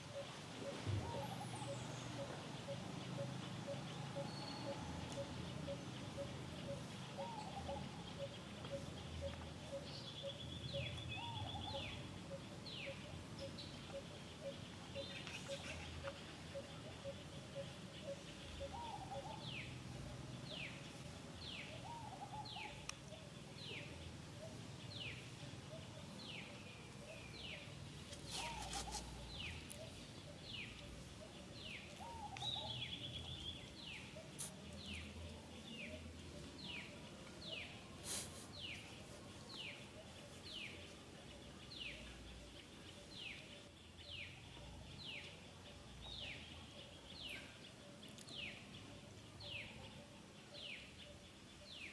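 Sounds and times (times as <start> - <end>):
fainter lower bird calls: 20.5 - 43.7.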